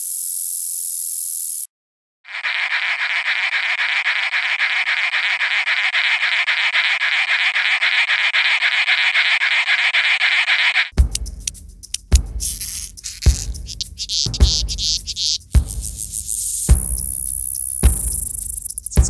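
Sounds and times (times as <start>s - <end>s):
insect buzzing stridulation: 0.0s - 1.7s, 2.3s - 19.0s
low thumps and clicks: 11.0s - 19.0s.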